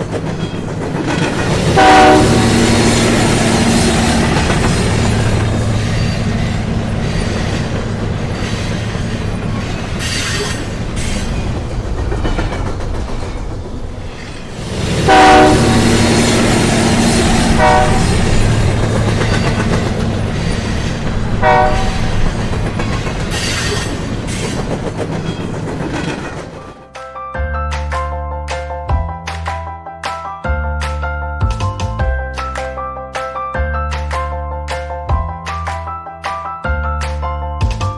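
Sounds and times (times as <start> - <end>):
train rumbling on rails: 0.0 - 26.9
train horn blast: 1.4 - 11.4, 14.5 - 22.9.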